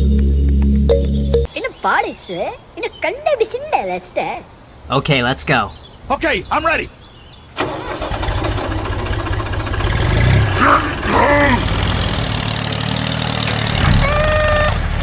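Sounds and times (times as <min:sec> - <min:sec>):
small engine chugging: 0:07.6 - 0:15.0.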